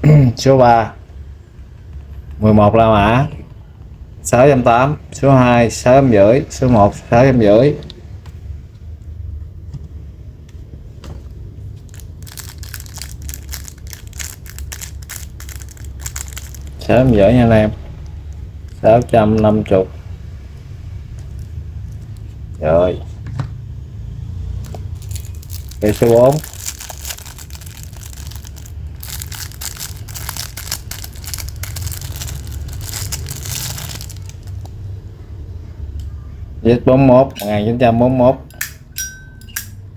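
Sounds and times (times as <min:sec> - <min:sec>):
low rumble of handling noise: 0:06.6 - 0:39.9
crinkling and small clicks: 0:11.7 - 0:17.2, 0:21.1 - 0:22.6, 0:24.6 - 0:34.8.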